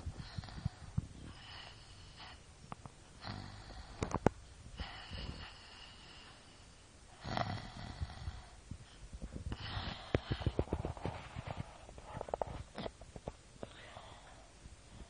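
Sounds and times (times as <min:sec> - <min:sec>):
girl snoring: 0:00.2 - 0:02.4, 0:03.2 - 0:04.2, 0:07.2 - 0:08.6, 0:09.6 - 0:10.6.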